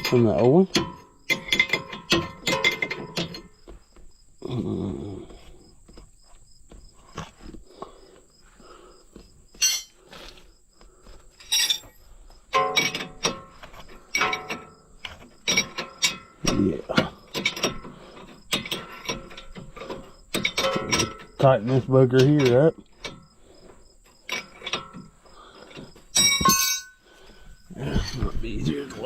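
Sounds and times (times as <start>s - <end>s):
metal tools knocking on steel: 0.0s - 3.9s, 9.5s - 10.0s, 11.4s - 23.4s, 24.1s - 27.0s.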